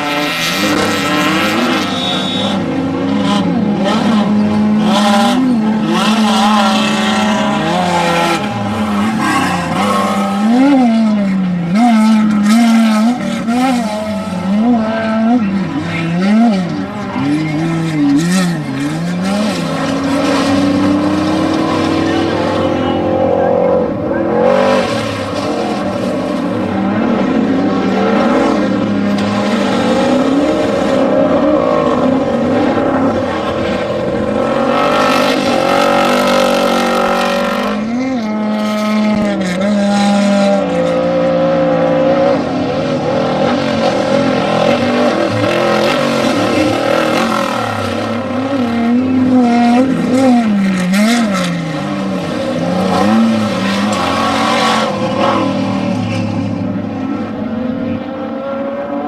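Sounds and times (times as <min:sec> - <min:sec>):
race vehicle engines revving: 0:00.0 - 0:59.0.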